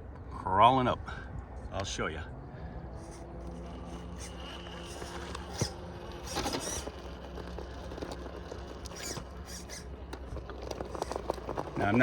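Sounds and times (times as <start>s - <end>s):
electric motor humming: 3.0s - 12.0s
scrapes and clicks: 3.0s - 12.0s.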